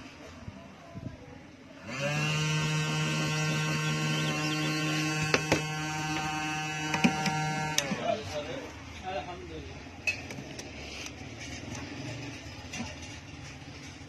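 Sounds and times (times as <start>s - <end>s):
hot-air gun blower humming: 1.8s - 8.3s.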